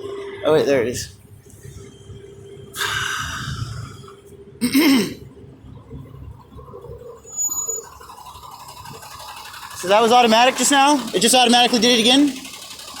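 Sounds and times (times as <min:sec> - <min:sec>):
air brake hissing: 0:02.8 - 0:04.1.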